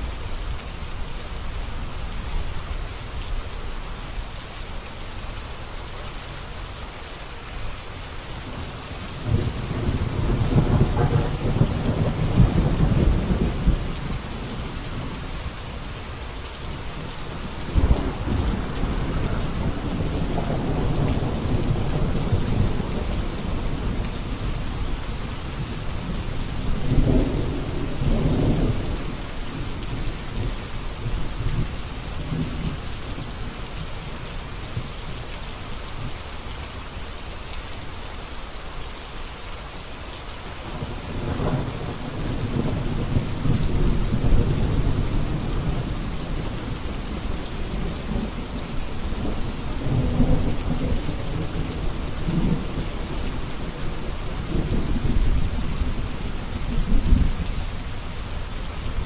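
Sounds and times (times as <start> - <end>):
steady rain falling: 0.0 - 59.0
rolling thunder: 8.5 - 15.5, 16.7 - 32.8, 40.8 - 57.8.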